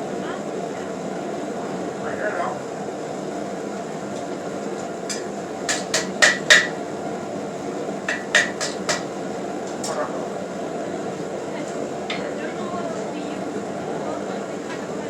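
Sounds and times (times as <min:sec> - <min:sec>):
hammer striking steel on anvil: 0:05.1 - 0:06.8, 0:08.1 - 0:09.1.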